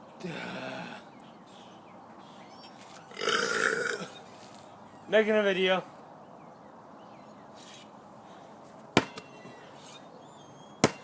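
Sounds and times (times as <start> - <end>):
basketball thudding: 10.8 - 11.0.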